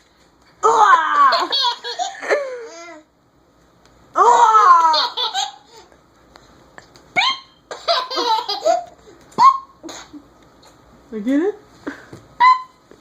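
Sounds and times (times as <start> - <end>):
baby laughing: 1.2 - 3.1, 4.6 - 5.9, 7.2 - 10.2.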